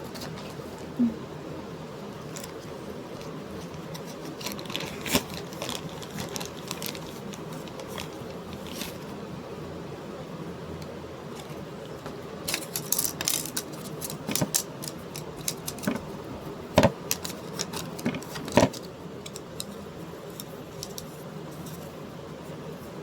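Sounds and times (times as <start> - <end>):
small hard objects rattling: 12.5 - 16.0.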